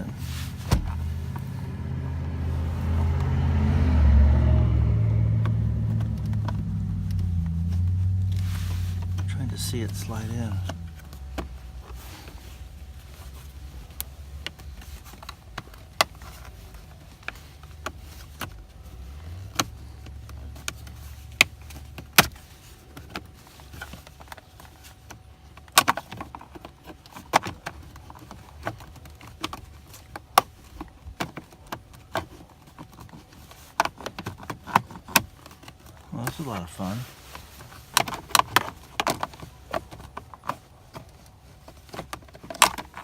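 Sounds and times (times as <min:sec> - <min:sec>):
low hum: 0:00.0 - 0:14.9.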